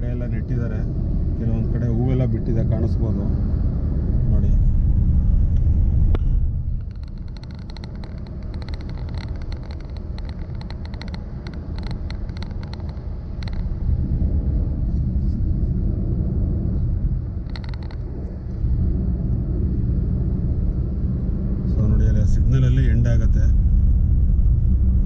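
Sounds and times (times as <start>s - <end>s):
vehicle road and engine rumble: 0.0s - 25.0s
small ticking rattles: 6.6s - 14.0s, 17.3s - 18.6s.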